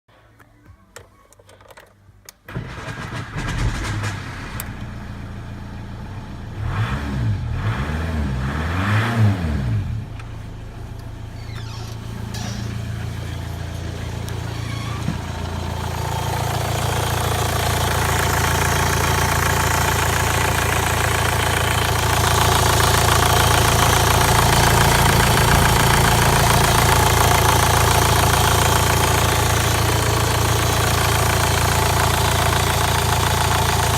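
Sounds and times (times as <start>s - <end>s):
diesel engine cranking and starting: 2.4s - 33.9s
engine revving: 6.0s - 10.3s, 12.9s - 33.9s
engine idling: 10.0s - 33.9s.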